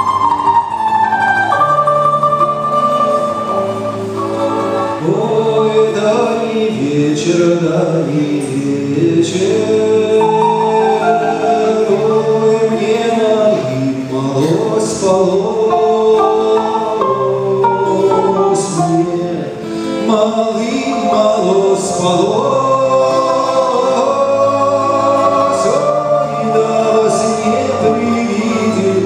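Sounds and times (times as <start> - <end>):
button accordion: 0.0 - 5.2
balalaika: 0.0 - 6.0
voices singing folk song: 0.0 - 29.0.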